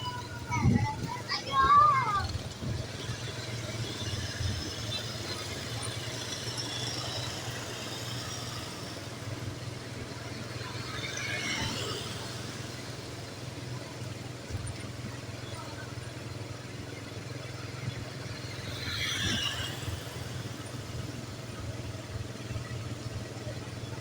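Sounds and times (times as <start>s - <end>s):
traffic engine hum: 0.0s - 24.0s
vehicle squeal: 18.5s - 20.2s.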